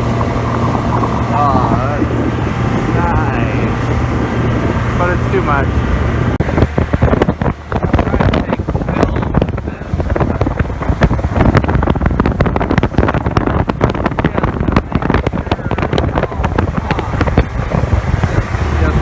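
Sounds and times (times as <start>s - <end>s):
boat engine rumble: 0.0s - 19.0s
hull slapping water: 0.0s - 19.0s
wind buffeting microphone: 0.0s - 19.0s.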